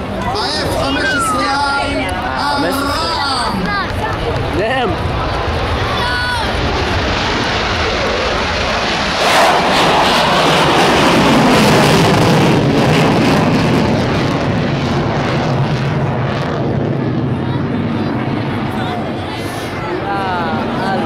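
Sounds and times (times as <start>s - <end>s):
jet engines passing by: 0.0s - 21.0s.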